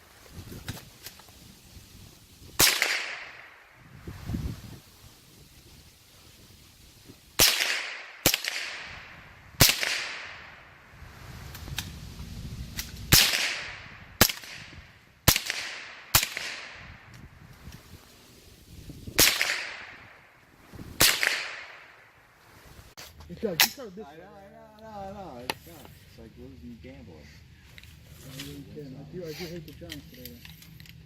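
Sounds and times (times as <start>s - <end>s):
rifle shots echoing: 2.6s - 3.7s, 7.4s - 10.8s, 13.1s - 17.0s, 19.2s - 20.4s, 21.0s - 22.1s.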